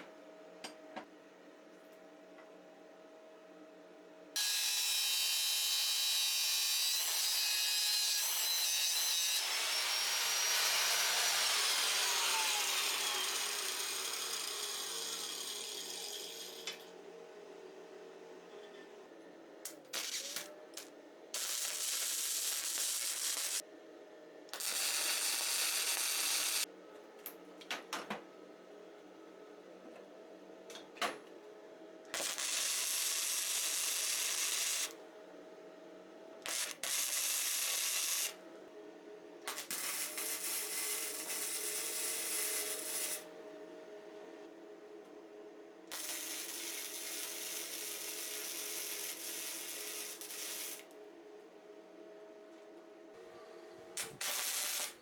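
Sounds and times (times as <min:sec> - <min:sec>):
arc welder hissing: 0:19.7 - 0:23.6, 0:24.6 - 0:26.7, 0:32.2 - 0:34.9, 0:36.4 - 0:38.3, 0:39.5 - 0:43.3, 0:45.9 - 0:50.8, 0:54.0 - 0:55.0.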